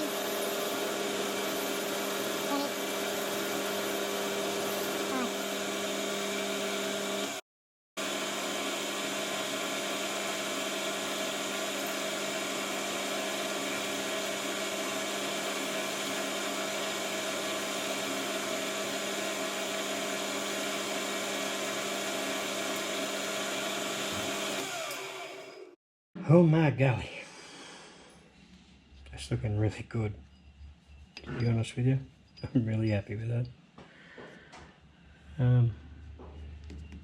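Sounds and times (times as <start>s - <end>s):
metal lathe motor hum and whine: 0.0s - 7.4s, 8.0s - 25.7s.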